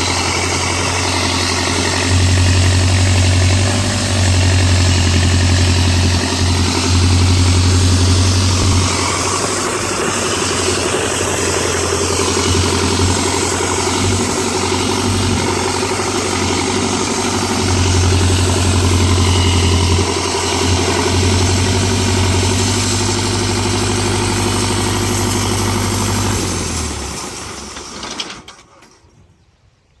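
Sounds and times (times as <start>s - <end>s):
sawmill engine running: 0.0s - 29.0s.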